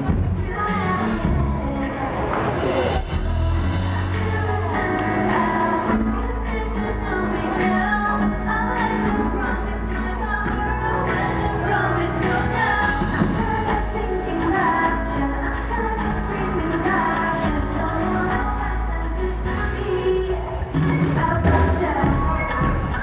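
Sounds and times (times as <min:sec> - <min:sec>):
band backing track with bass: 0:00.0 - 0:23.0
woman singing pop song: 0:00.0 - 0:23.0.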